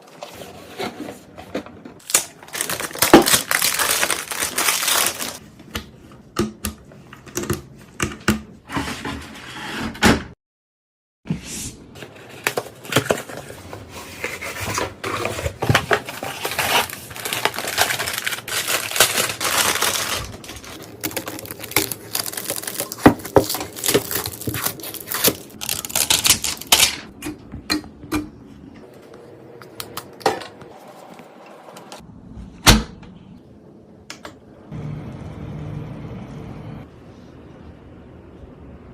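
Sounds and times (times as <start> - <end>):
plastic rustling: 0.0 - 5.4, 12.0 - 27.1.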